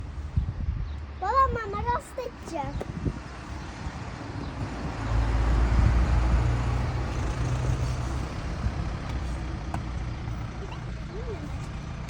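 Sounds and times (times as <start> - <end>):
vehicle engine rumble passing: 2.6 - 12.0.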